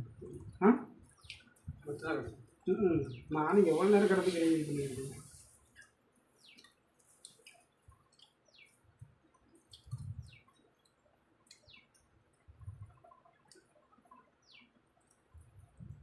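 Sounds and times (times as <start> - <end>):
bird chirping: 5.8 - 12.0, 12.9 - 15.1.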